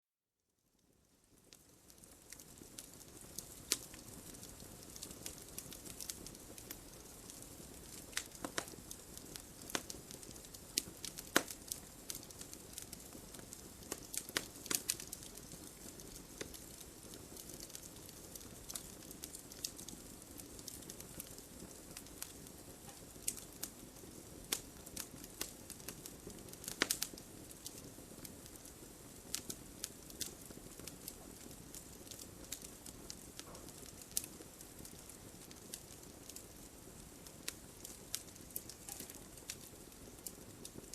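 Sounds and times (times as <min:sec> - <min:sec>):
campfire crackling: 0:00.8 - 0:40.9
fire popping and snapping: 0:00.8 - 0:40.9.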